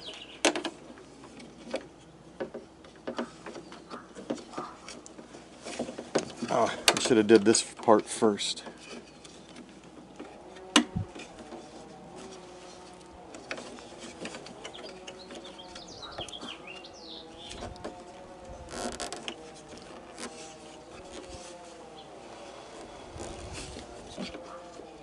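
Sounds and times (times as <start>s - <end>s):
birds chirping faintly: 0.0s - 0.6s, 1.8s - 5.2s, 11.6s - 25.0s.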